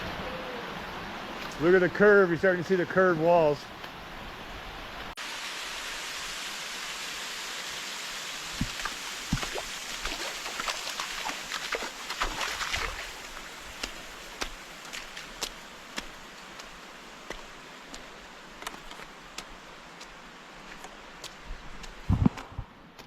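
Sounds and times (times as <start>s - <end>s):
creek water rushing: 0.0s - 22.2s
small water splashes and plops: 8.5s - 21.4s.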